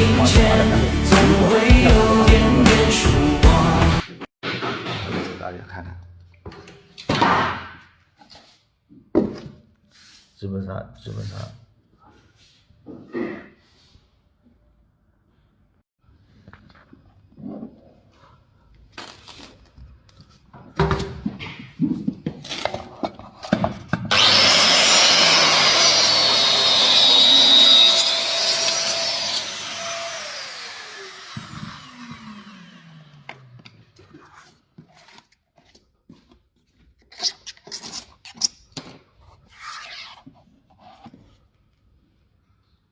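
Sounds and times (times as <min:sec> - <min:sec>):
power tool cutting: 0:00.0 - 0:04.0, 0:24.1 - 0:33.7
motor spinning down whine: 0:24.1 - 0:33.6.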